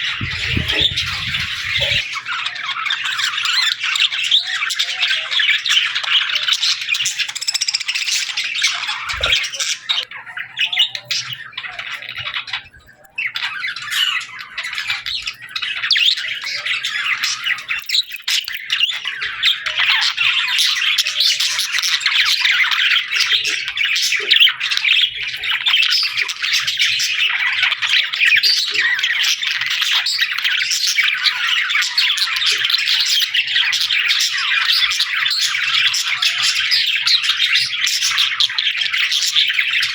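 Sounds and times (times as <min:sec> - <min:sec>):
small birds chirping and chattering: 0:00.0 - 0:39.9.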